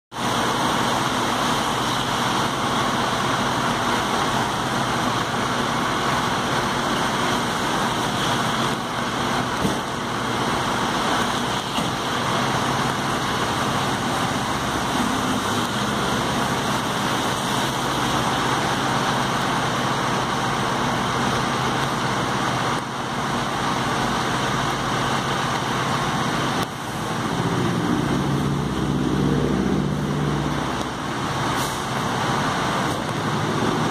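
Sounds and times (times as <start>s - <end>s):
city traffic noise: 0.1s - 33.9s
fire truck engines running: 0.1s - 33.9s
truck engine accelerating: 0.1s - 33.9s.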